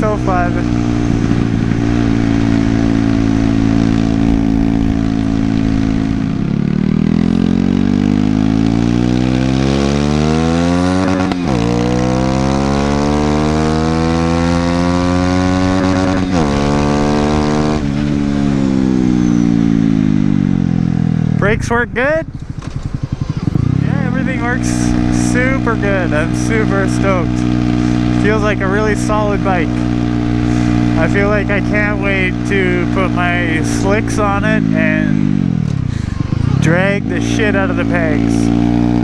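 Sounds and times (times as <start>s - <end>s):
motorcycle engine accelerating: 0.0s - 39.0s.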